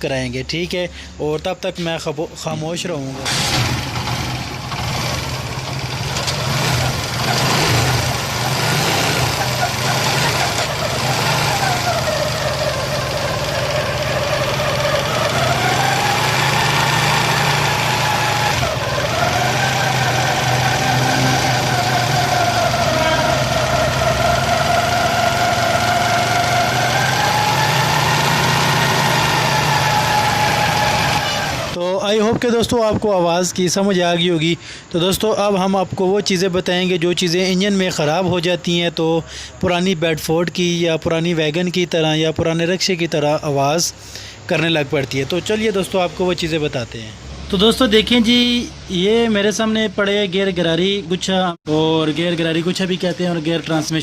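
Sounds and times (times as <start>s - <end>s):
motorcycle engine with gear whine: 3.2s - 32.5s.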